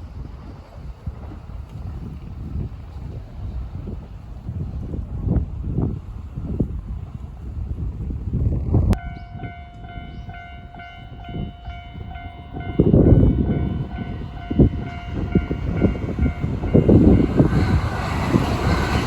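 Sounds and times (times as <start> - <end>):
level crossing warning bell: 9.0 - 17.9.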